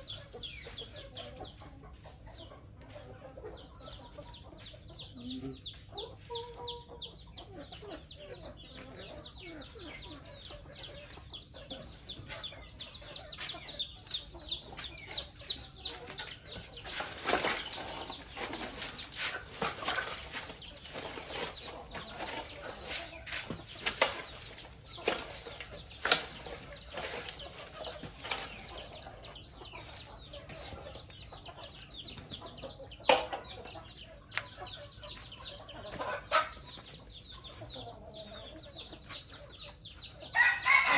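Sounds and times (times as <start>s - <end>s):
chickens peeping and clucking: 0.0s - 40.9s
rustling noise: 16.3s - 28.8s.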